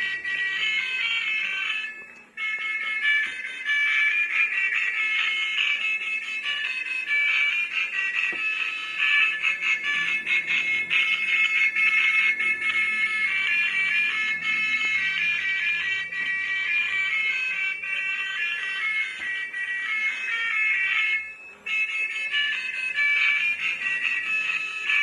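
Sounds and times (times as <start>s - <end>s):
tinny electronic beeping melody: 6.2s - 25.0s.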